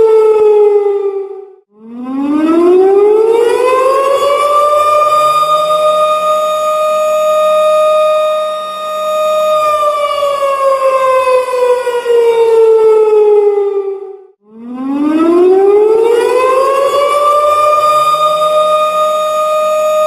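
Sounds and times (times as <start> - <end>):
air raid siren wailing: 0.0 - 20.0.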